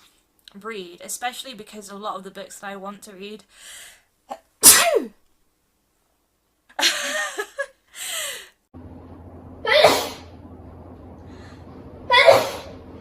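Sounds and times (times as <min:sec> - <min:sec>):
woman sneezing: 0:04.6 - 0:05.2, 0:09.7 - 0:10.2, 0:12.1 - 0:12.8
steady low hum: 0:08.8 - 0:13.0.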